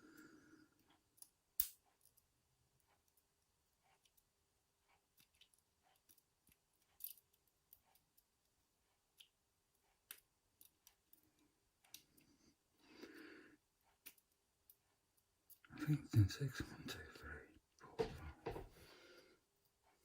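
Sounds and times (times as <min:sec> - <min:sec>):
small clicks of tweezers and pins: 0:00.8 - 0:12.4, 0:13.9 - 0:15.7.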